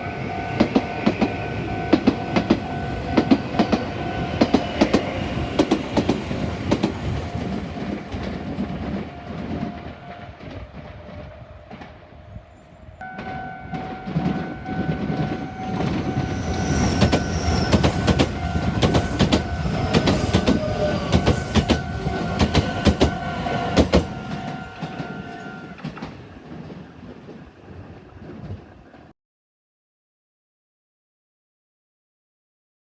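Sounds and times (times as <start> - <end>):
crossing warning bell ringing: 0.0 - 10.6, 13.0 - 26.1
train wheels clacking over rail joints: 0.4 - 9.8, 13.8 - 29.1.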